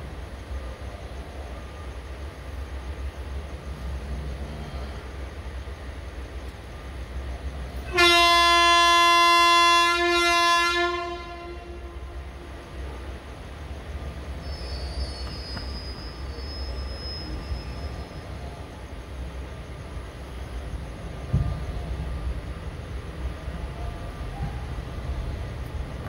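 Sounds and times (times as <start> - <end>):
low train rumble: 0.0 - 26.0
locomotive horn blast: 7.8 - 12.4.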